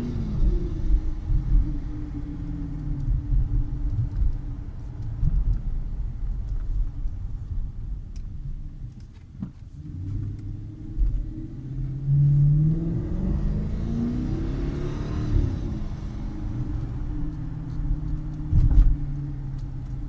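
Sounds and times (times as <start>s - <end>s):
car engine rumble while driving: 0.0s - 20.0s.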